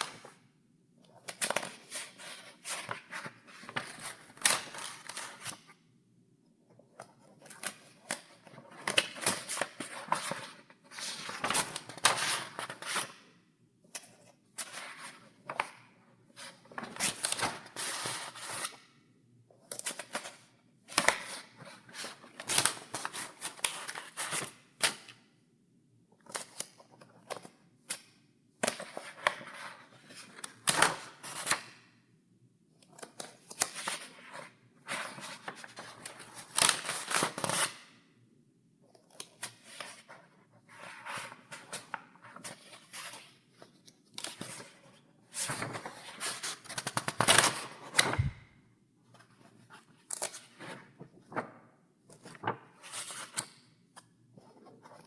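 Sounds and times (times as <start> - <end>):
paper pages turning: 45.3 - 48.5, 49.2 - 51.5, 52.1 - 53.5.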